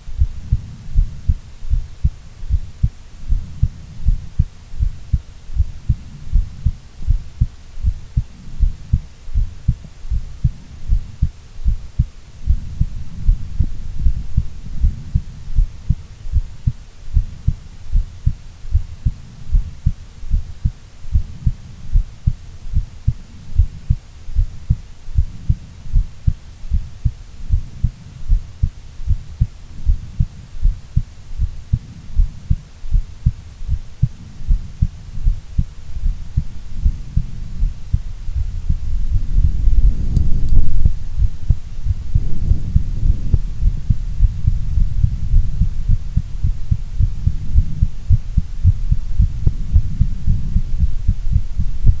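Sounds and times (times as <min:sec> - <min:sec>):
heartbeat thumps: 0:00.2 - 0:52.0.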